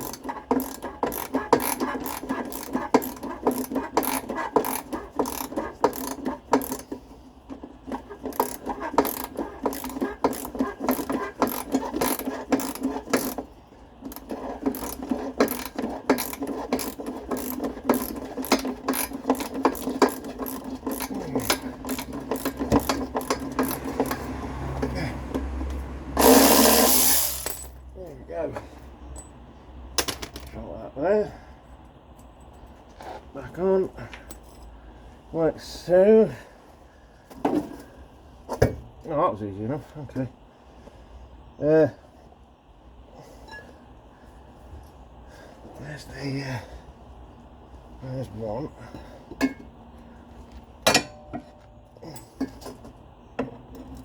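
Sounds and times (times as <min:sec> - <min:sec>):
ratchet spanner clicking: 0:00.0 - 0:27.7.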